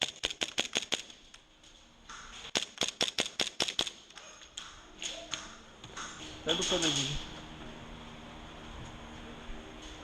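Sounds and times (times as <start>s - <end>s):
airsoft gun shots: 2.5s - 4.0s.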